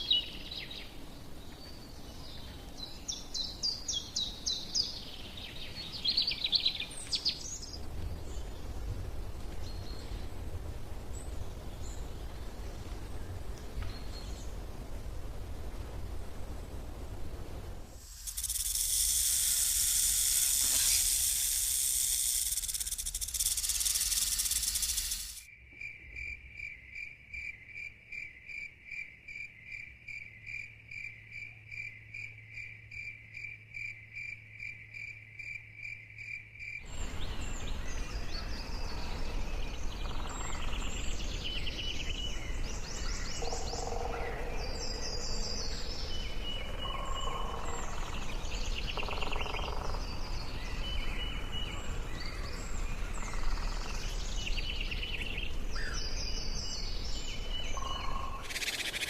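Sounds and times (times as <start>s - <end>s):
loud high hiss: 17.4s - 25.5s, 58.4s - 59.0s
pulsing insect chirp: 17.8s - 59.0s
bird calls: 36.9s - 59.0s.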